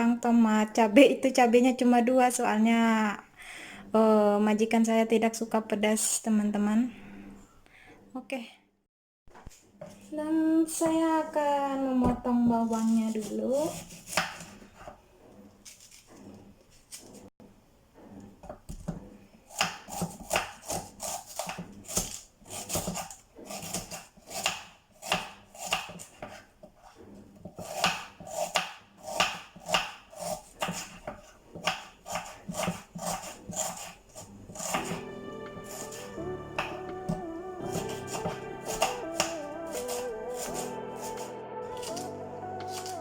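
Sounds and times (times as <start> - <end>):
knife chopping on cutting board: 13.6 - 15.0, 18.4 - 26.4, 27.4 - 35.0, 36.6 - 41.2, 41.8 - 43.0
music: 34.8 - 43.0.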